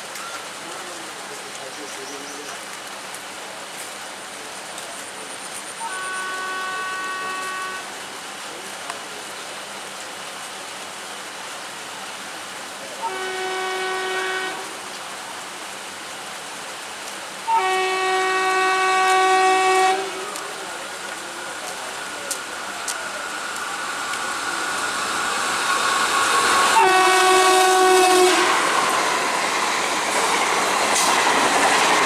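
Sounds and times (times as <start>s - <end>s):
heavy rain hissing: 0.0s - 32.0s
locomotive air horn blasts: 5.8s - 8.0s, 13.0s - 14.9s, 17.5s - 29.2s.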